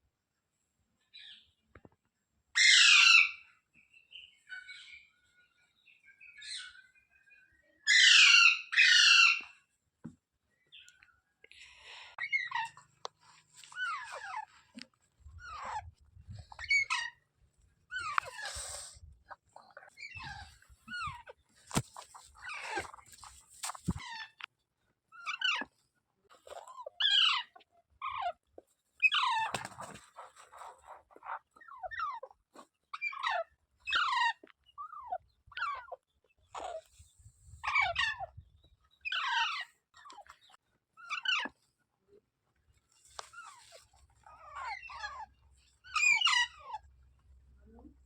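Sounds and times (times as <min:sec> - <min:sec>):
parrot squawking: 0:45.9 - 0:46.8.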